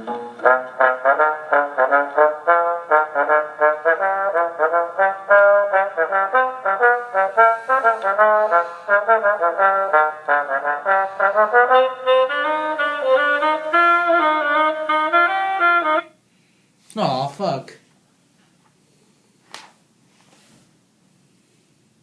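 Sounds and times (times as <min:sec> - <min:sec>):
music through small speaker: 0:00.0 - 0:16.1.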